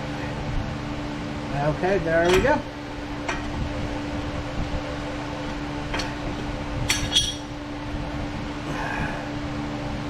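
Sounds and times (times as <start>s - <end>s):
fan-like hum: 0.0s - 10.0s
metal brake parts clinking: 2.2s - 2.6s, 5.9s - 7.6s.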